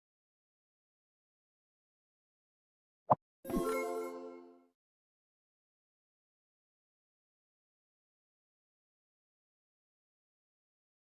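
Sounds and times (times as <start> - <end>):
musical chime: 3.5 - 4.6.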